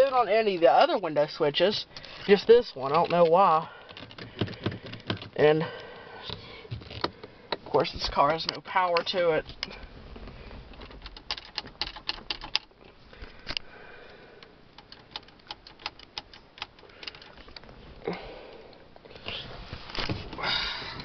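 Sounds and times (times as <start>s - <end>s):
rustling handling noise: 19.0s - 21.0s.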